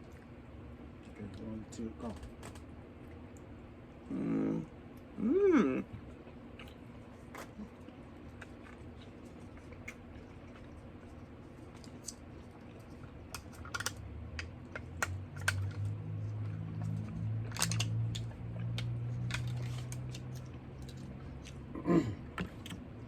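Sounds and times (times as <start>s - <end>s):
people chewing and biting: 6.0s - 23.0s.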